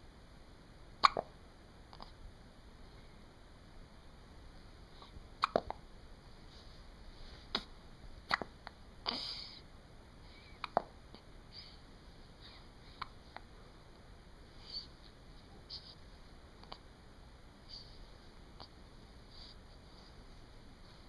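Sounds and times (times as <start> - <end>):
sharp hiccups: 1.0 - 1.3, 5.4 - 5.8, 8.3 - 8.5.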